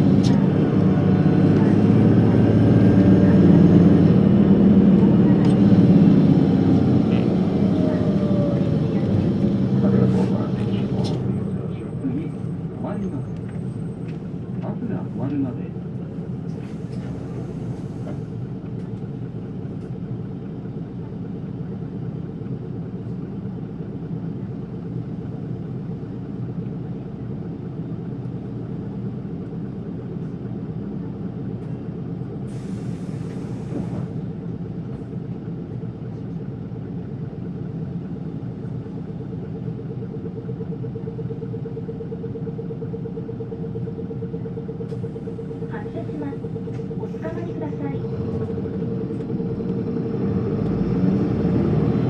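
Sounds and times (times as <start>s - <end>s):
bus diesel engine and road noise: 0.0s - 52.0s
steady whine: 5.0s - 13.0s.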